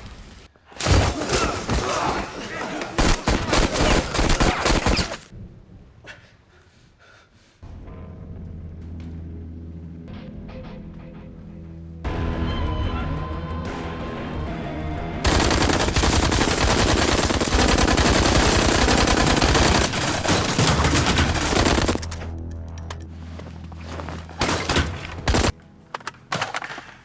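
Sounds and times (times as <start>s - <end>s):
automatic gunfire: 3.0s - 5.3s, 15.3s - 22.0s.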